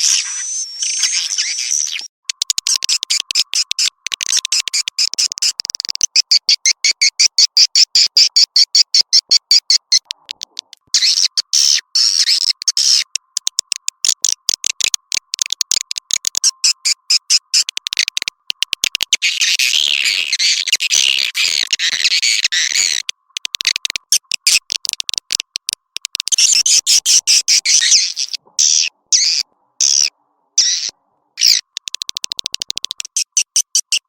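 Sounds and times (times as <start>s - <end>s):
swiftlets chirping and twittering: 0.0s - 13.1s, 26.3s - 34.0s.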